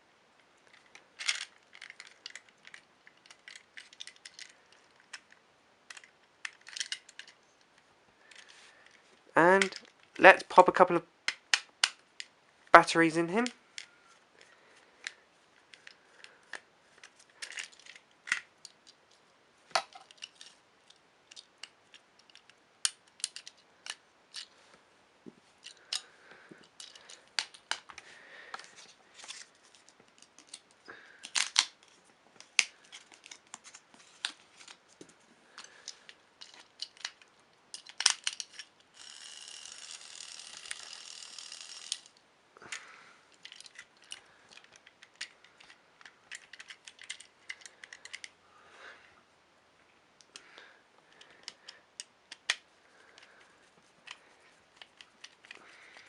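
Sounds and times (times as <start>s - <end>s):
plastic toy clicks and rattles: 0.7s - 9.0s, 15.0s - 19.2s, 19.8s - 24.5s, 25.6s - 27.9s, 29.4s - 33.6s, 35.6s - 48.3s, 51.1s - 53.4s, 54.0s - 56.0s
toy motor whirring: 37.8s - 42.2s.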